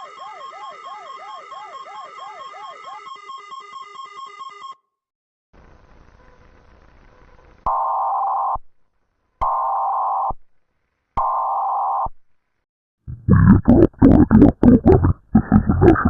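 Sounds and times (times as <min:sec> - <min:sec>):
faint hiss: 0:05.6 - 0:07.7.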